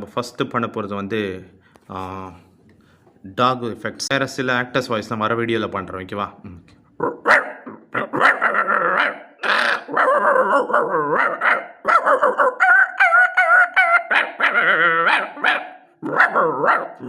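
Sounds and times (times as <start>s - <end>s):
person imitating dog barks: 7.0s - 17.0s.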